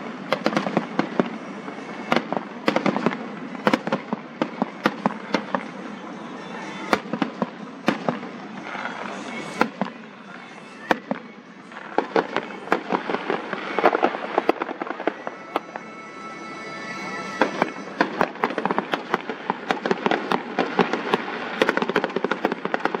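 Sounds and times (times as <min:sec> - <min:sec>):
fireworks banging and crackling: 0:00.0 - 0:23.0
rumble of firework bursts: 0:10.9 - 0:23.0.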